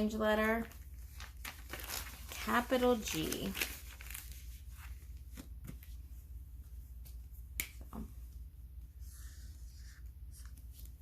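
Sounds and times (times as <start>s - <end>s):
low steady hum: 0.0s - 11.0s
soft handling sounds: 0.3s - 11.0s.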